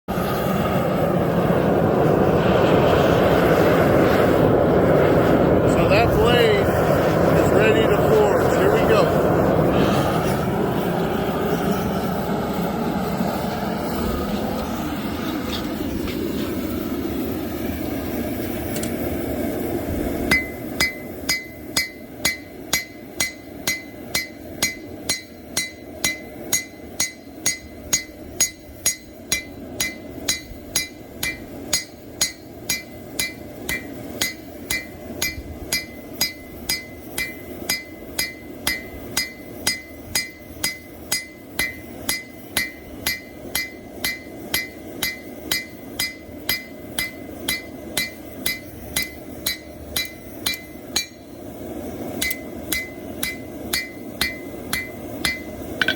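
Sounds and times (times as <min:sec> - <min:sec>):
steady rushing noise: 0:00.1 - 0:55.9
hammer striking steel on anvil: 0:20.3 - 0:51.3, 0:52.2 - 0:55.9.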